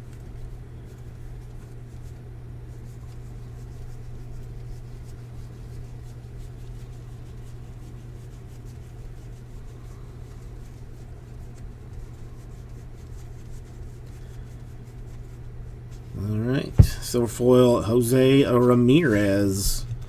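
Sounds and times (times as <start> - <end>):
steady low hum: 15.9 - 20.0.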